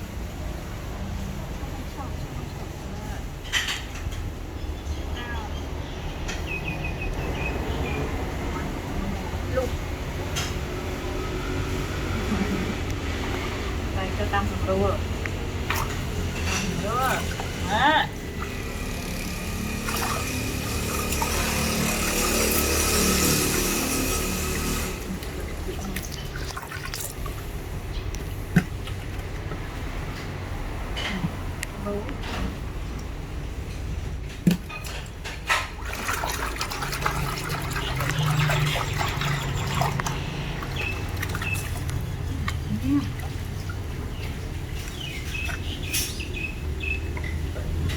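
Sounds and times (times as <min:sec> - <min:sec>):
water running: 0:08.2 - 0:29.8, 0:34.7 - 0:47.9.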